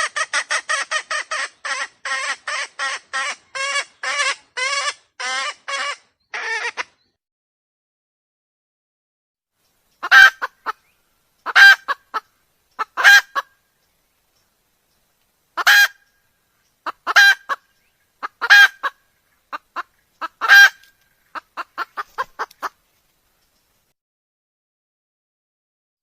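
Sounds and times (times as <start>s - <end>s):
junglefowl calling: 0.0s - 7.0s, 10.0s - 13.6s, 15.6s - 22.8s.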